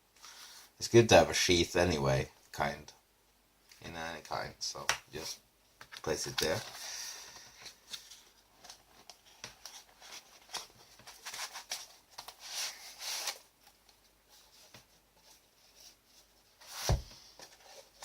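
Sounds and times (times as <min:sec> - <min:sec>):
packaging rustling: 0:07.5 - 0:13.8.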